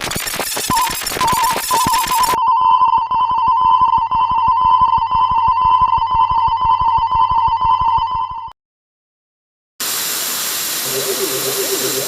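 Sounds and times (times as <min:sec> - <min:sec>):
electronic warbling alarm ring: 0:00.4 - 0:08.5.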